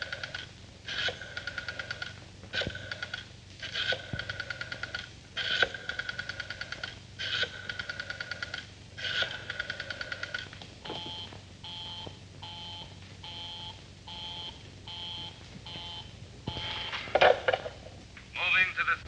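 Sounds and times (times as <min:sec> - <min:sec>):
rotary telephone dial clicking: 0:00.0 - 0:10.5.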